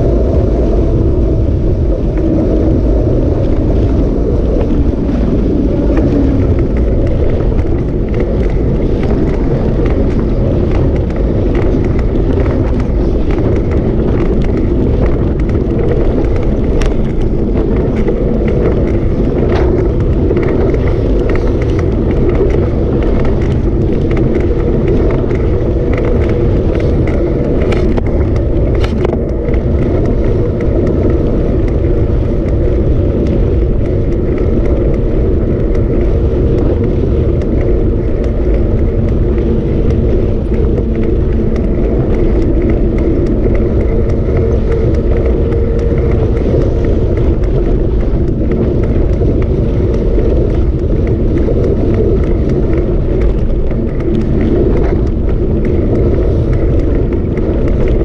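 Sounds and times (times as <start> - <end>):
vehicle rumble and drone: 0.0 - 58.0.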